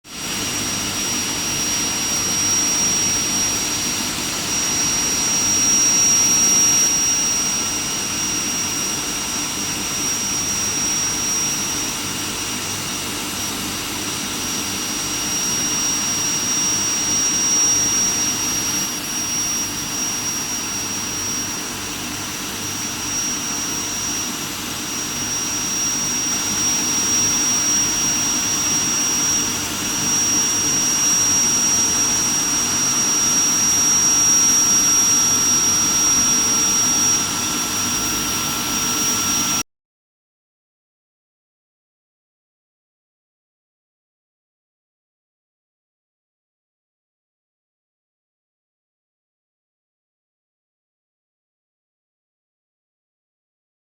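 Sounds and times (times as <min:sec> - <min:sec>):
high-pitched furnace whine: 0:00.1 - 0:39.6.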